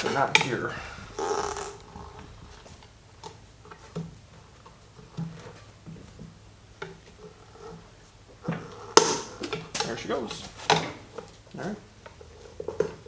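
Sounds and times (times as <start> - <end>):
clicks and taps of hand tools: 5.0 - 11.4.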